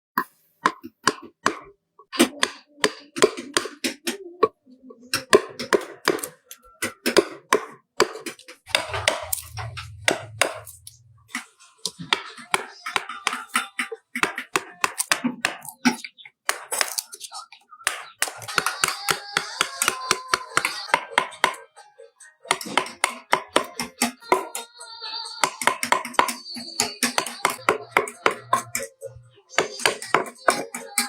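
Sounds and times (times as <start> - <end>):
low hum: 8.7 - 11.3.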